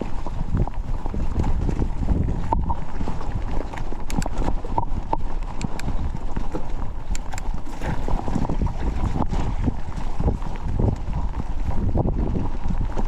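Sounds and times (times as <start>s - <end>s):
wind buffeting microphone: 0.0s - 13.0s
mountain bike rattling over ground: 6.0s - 13.0s.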